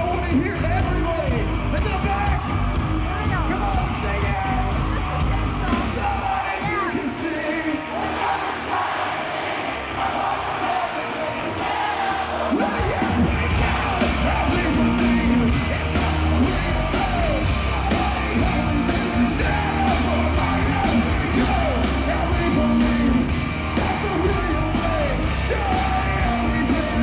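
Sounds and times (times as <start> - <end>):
bass: 0.0 - 27.0
distorted guitars: 0.0 - 27.0
drums: 0.0 - 27.0
person singing: 11.0 - 27.0.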